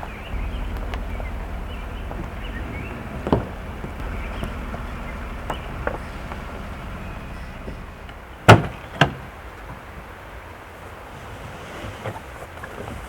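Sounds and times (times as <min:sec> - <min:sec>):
low steady rumble: 0:00.0 - 0:10.3
heavy thuds: 0:00.3 - 0:09.3.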